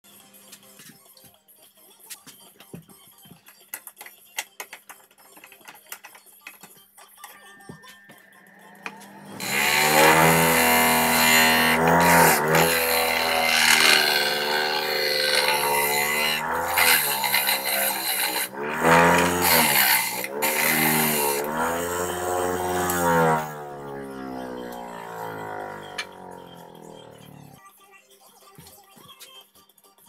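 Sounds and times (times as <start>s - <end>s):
electric grinding machine running: 8.8s - 27.6s.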